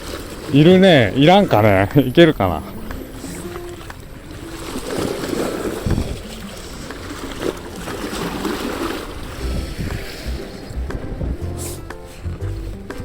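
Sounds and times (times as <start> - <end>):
sea wash: 0.0 - 13.0
wind buffeting microphone: 2.8 - 13.0.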